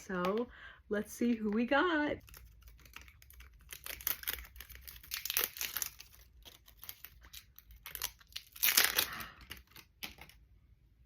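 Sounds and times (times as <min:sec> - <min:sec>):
wrapper crinkling and tearing: 0:02.2 - 0:10.4.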